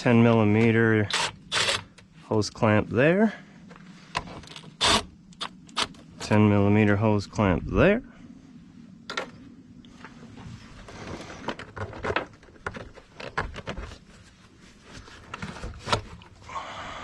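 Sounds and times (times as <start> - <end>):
clicks knocks and rattles of hand work: 11.0 - 14.0.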